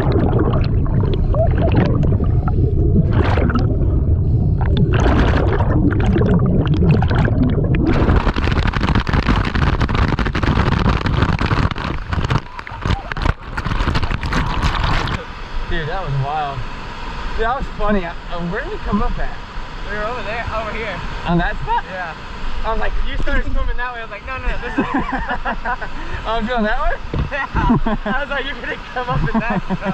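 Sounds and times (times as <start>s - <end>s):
gurgling bubbles: 0.0s - 15.3s
underwater rush of waterfall: 0.0s - 29.9s
hissing rush of falling water: 7.9s - 29.9s.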